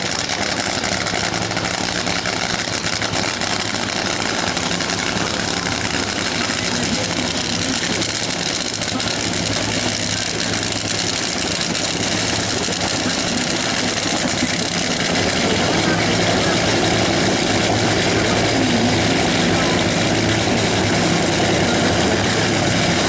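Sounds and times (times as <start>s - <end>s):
racing car engine idling: 0.0s - 23.0s.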